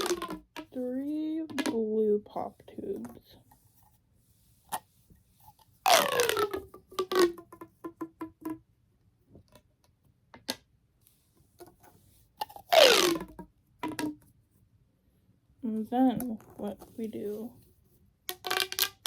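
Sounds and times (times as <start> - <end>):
plastic pop tube pops: 0.0 - 0.7, 5.9 - 8.6, 12.7 - 14.2.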